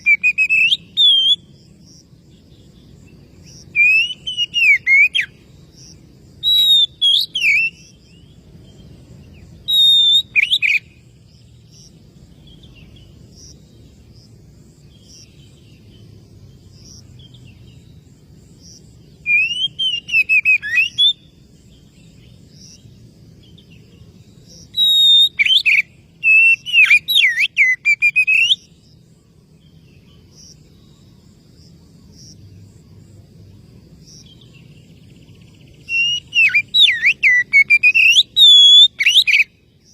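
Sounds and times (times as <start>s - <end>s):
bird singing whistled phrases: 0.0s - 1.5s, 3.7s - 5.3s, 6.4s - 8.0s, 9.6s - 11.0s, 19.2s - 21.3s, 24.7s - 28.7s, 35.8s - 39.5s.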